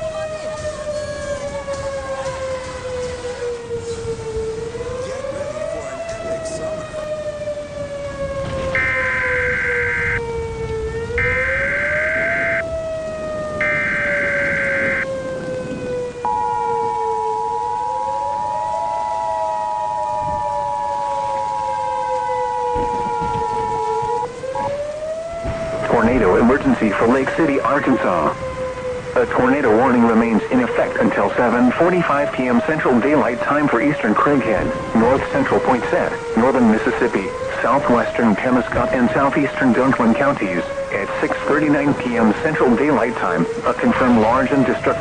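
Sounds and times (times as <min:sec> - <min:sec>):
low rumbles: 0:00.0 - 0:45.0
warning siren wailing: 0:00.0 - 0:45.0
harsh buzzing data burst: 0:13.6 - 0:15.0
two-tone attention signal: 0:13.6 - 0:15.0.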